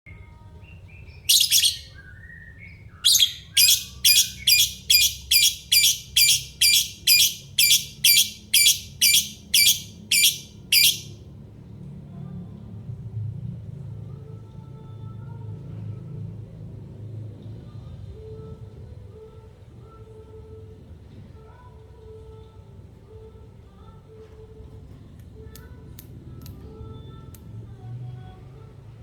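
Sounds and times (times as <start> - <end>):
parrot screeching: 1.3 - 1.9, 3.1 - 11.1.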